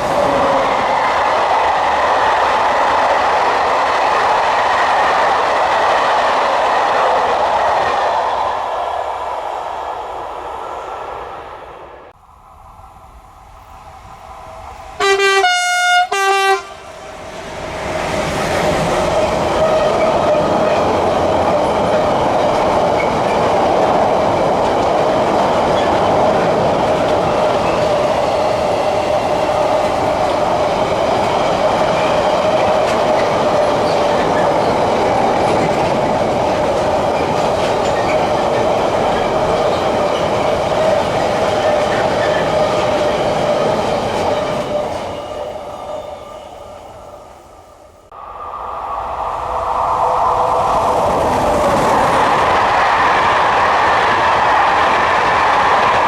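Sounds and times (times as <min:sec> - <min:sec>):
train rolling past: 0:00.0 - 0:56.0
two-tone train horn blasts: 0:15.0 - 0:17.0
wheels clattering on rails: 0:17.2 - 0:46.0.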